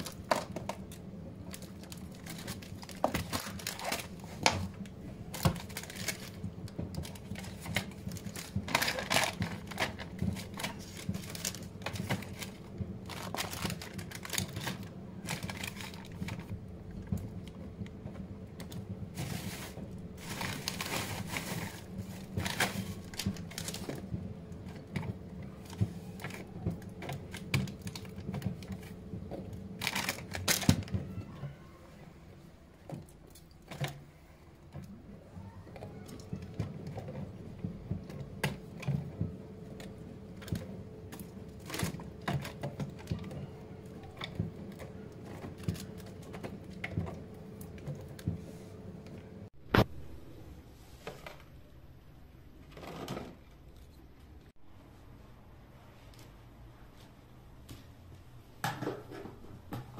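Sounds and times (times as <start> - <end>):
household items clicking and knocking: 0.0 - 31.5.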